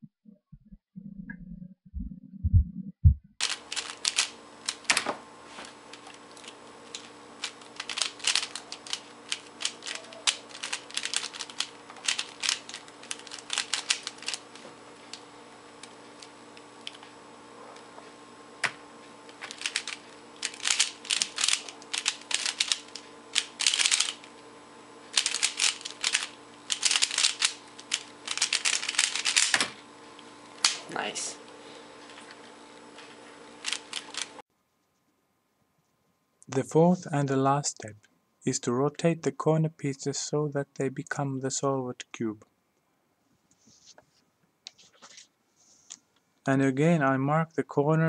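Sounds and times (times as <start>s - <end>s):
faint hum: 0.3s - 48.0s
puzzle cube clicking: 7.7s - 14.4s, 19.5s - 24.2s, 25.2s - 29.6s.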